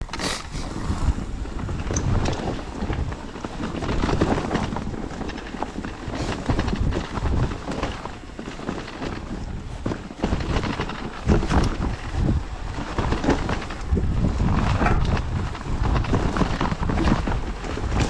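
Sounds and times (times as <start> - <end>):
bike rattling over rough ground: 0.0 - 18.0
wind buffeting microphone: 0.0 - 18.0.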